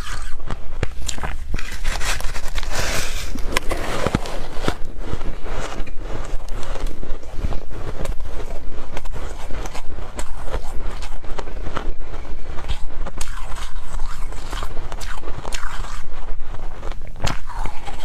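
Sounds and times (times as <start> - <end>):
snow crunching: 0.2 - 12.6.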